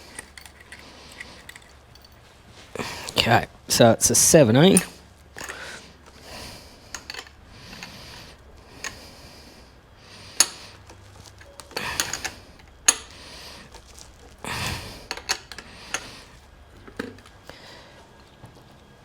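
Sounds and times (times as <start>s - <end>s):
metal parts knocking and clicking: 0.0s - 2.2s, 4.7s - 5.6s, 6.9s - 8.0s, 10.4s - 14.0s, 15.0s - 16.1s.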